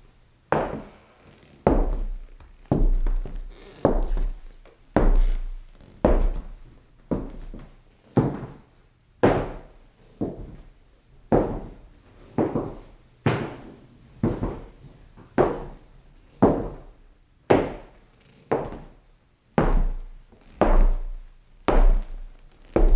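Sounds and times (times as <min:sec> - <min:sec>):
footsteps on wooden floor: 0:00.5 - 0:08.6, 0:11.3 - 0:11.8, 0:12.4 - 0:14.8, 0:18.5 - 0:18.9, 0:19.6 - 0:22.9.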